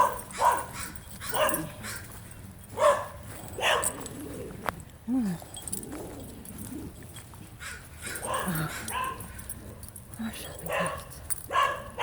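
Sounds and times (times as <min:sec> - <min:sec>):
dog barking: 0:00.0 - 0:02.0, 0:02.8 - 0:04.0, 0:08.2 - 0:09.4, 0:10.7 - 0:12.0.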